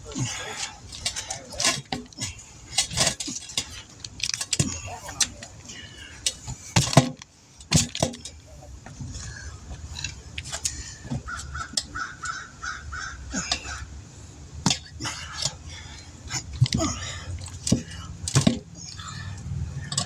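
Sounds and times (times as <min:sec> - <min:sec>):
bird cawing: 0:11.1 - 0:14.0.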